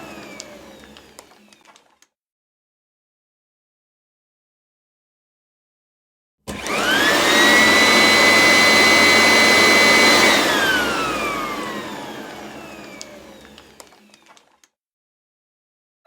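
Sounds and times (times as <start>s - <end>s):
electric motor whine: 0.0s - 1.4s, 6.5s - 14.0s.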